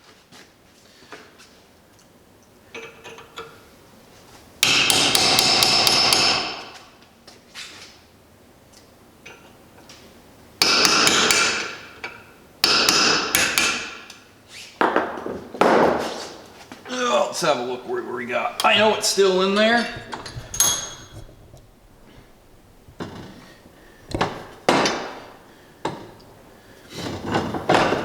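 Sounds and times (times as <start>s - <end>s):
hammer striking steel chisel: 4.6s - 6.6s, 10.6s - 11.7s, 12.6s - 14.0s.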